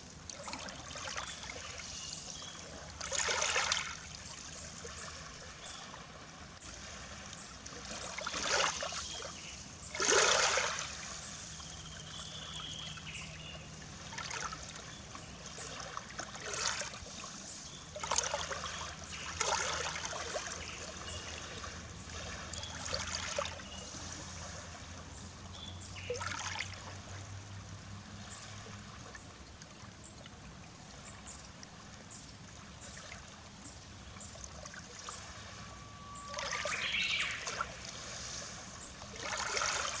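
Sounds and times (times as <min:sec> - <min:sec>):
small waves lapping on shore: 0:00.0 - 0:40.0.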